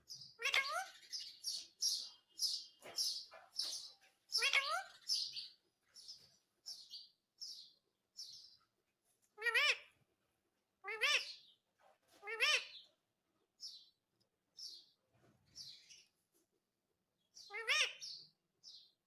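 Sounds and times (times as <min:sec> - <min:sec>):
parrot chirping: 0:00.1 - 0:08.5, 0:09.4 - 0:10.0, 0:10.8 - 0:11.6, 0:12.2 - 0:13.0, 0:17.4 - 0:18.9
parrot wavering calls: 0:00.4 - 0:00.9, 0:04.4 - 0:05.0.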